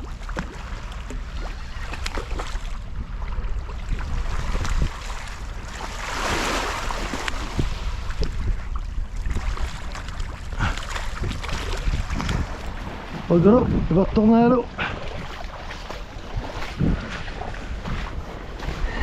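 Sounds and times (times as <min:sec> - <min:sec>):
wind rumbling on microphone: 0:00.0 - 0:19.0
water splash: 0:04.0 - 0:08.5.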